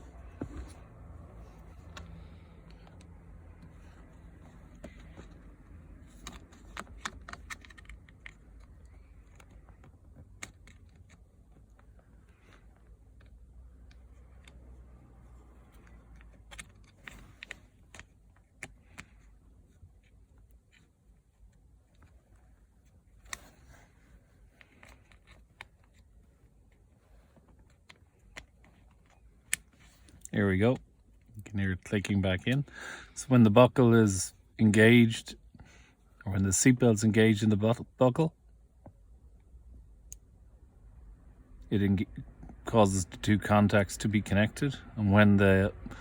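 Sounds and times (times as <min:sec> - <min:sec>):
handling noise: 0:00.0 - 0:31.3.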